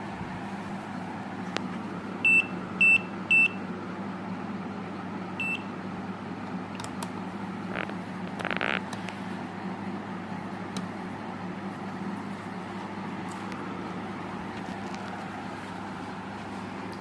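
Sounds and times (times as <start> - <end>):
clamp meter beeping: 2.2 - 3.6, 5.4 - 5.7
clicks: 6.7 - 9.2.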